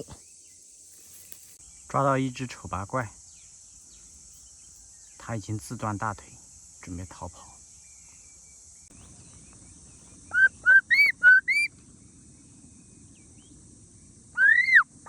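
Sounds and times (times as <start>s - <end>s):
faint high insect buzz: 0.0s - 15.0s
myna whistling: 10.3s - 11.7s, 14.4s - 14.9s.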